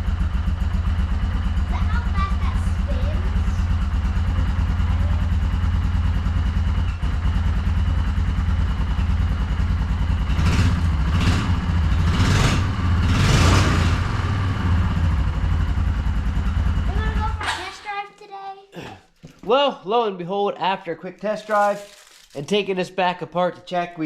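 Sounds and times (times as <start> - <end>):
atv engine running: 0.0 - 17.6.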